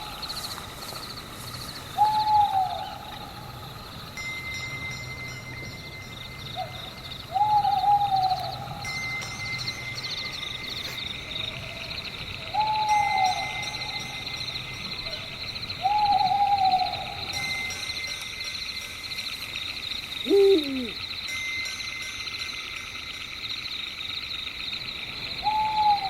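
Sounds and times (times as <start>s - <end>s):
crickets chirping: 0.0s - 26.0s
owl hooting: 2.0s - 3.2s, 15.8s - 17.4s, 20.2s - 21.0s, 25.4s - 26.0s.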